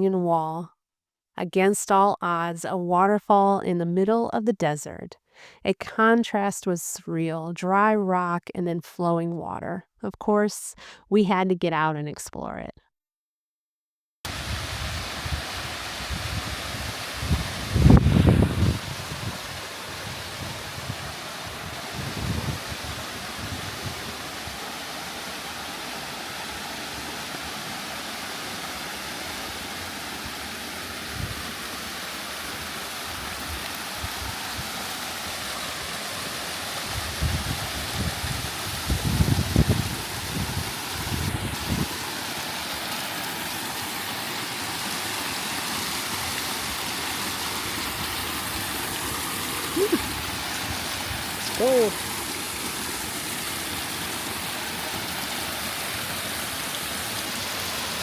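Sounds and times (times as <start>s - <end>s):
wind buffeting microphone: 14.3s - 24.6s, 36.9s - 41.9s
waterfall splashing on rock: 14.3s - 58.0s.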